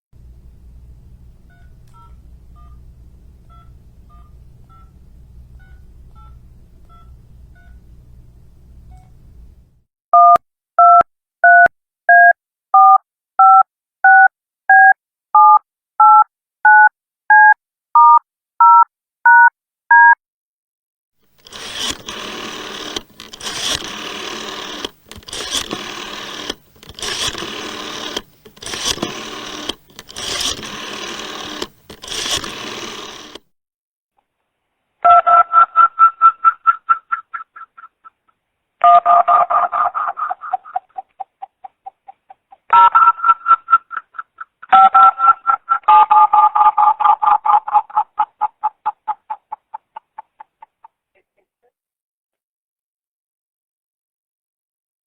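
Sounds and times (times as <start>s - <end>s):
low hum: 0.2s - 9.8s
phone keypad touch-tone beeps: 10.2s - 20.2s, 35.1s - 37.1s, 38.8s - 40.6s, 42.7s - 44.0s, 44.7s - 47.7s.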